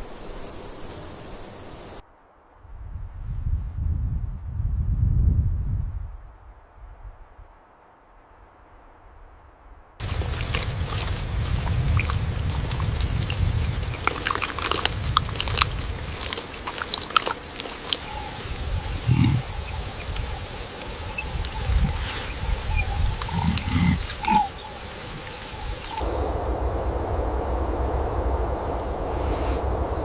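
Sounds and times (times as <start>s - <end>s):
large animal grunting: 10.0s - 26.0s.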